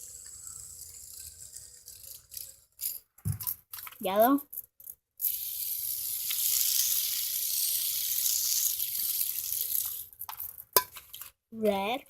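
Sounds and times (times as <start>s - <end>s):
fidget spinner bearing hiss: 0.0s - 3.0s, 5.2s - 10.2s.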